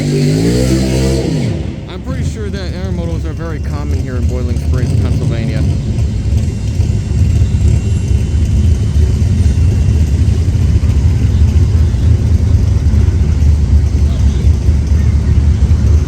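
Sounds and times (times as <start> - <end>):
freight train wheels rumbling: 0.0 - 16.0.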